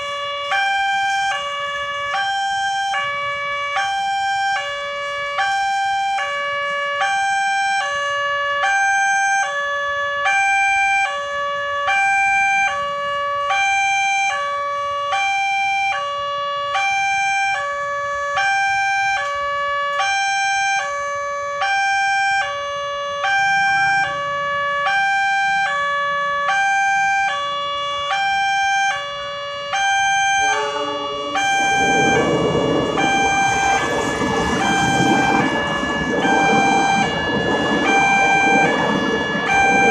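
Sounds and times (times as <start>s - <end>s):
two-tone warning siren: 0.0s - 39.9s
loud rushing rumble: 30.4s - 39.9s.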